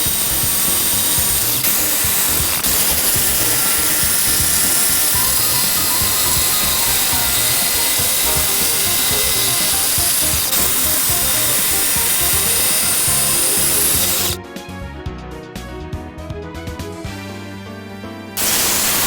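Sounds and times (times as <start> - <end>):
table saw cutting wood: 0.0 - 14.4, 18.4 - 19.0
background music: 0.1 - 19.0.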